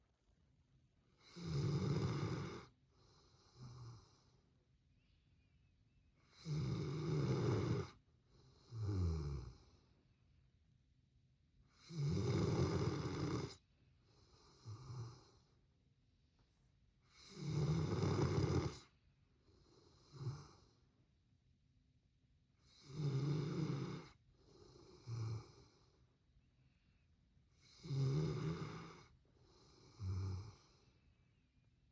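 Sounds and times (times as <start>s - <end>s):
dog snoring: 1.2s - 4.3s, 6.2s - 9.8s, 11.7s - 15.5s, 17.0s - 18.9s, 19.5s - 20.8s, 22.6s - 26.0s, 27.6s - 30.8s.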